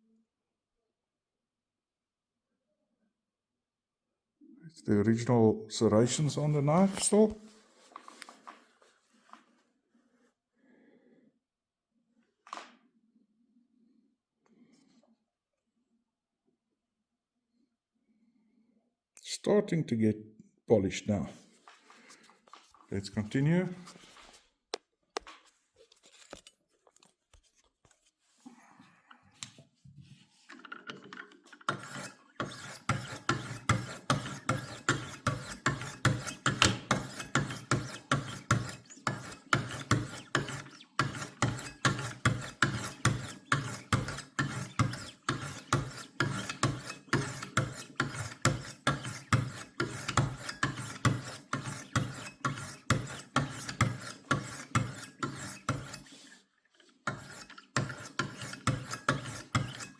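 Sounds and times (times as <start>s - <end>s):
sharpening stones rasping on knife: 31.7s - 56.4s, 57.1s - 59.9s.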